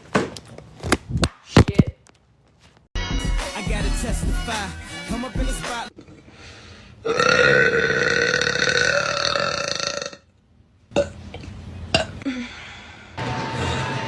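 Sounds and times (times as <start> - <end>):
woman burping: 7.0 - 10.2.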